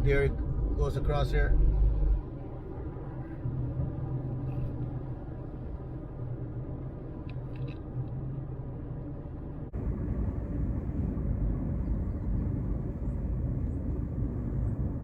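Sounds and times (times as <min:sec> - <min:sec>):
car engine and road noise: 0:09.7 - 0:15.0
deep steady rumble: 0:09.7 - 0:15.0.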